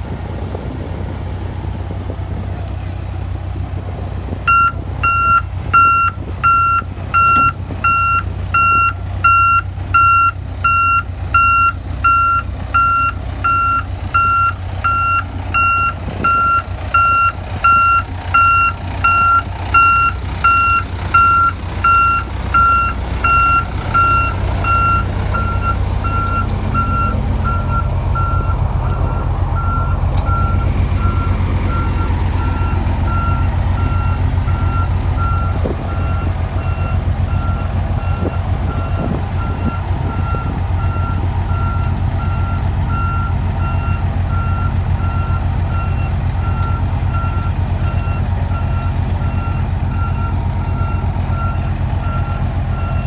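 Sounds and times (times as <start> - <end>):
truck engine running: 0.0 - 53.0
truck reversing alarm beeping: 4.2 - 53.0.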